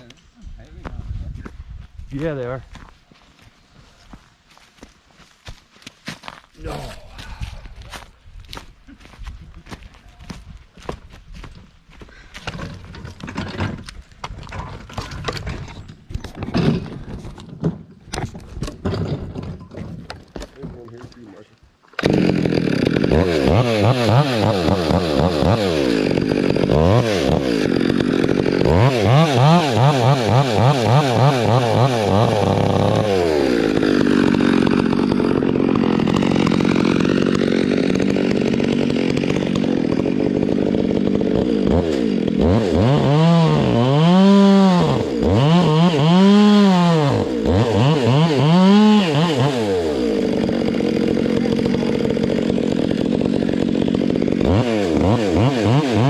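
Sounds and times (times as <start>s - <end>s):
chainsaw revving and cutting: 22.0s - 56.0s.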